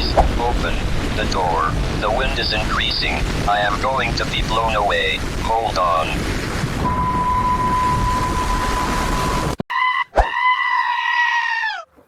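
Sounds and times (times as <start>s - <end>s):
wind buffeting microphone: 0.0s - 9.6s
high whistle: 6.8s - 9.6s.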